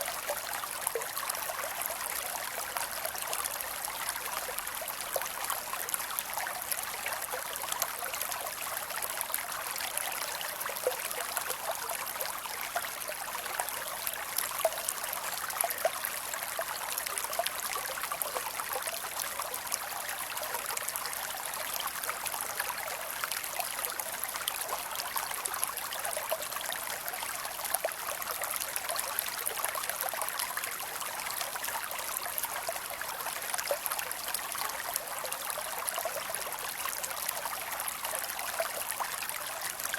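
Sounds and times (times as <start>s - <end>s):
creek water flowing over rocks: 0.0s - 39.9s.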